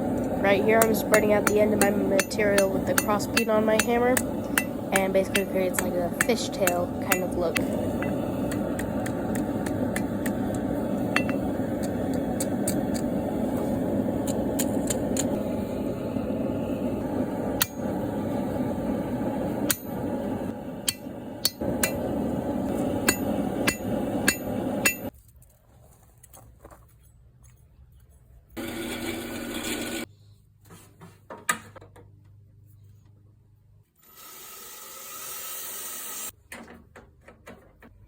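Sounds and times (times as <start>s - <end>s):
hammer ringing on anvil: 0.8s - 8.2s, 11.1s - 11.5s, 19.7s - 20.0s, 20.8s - 22.0s, 23.0s - 25.1s.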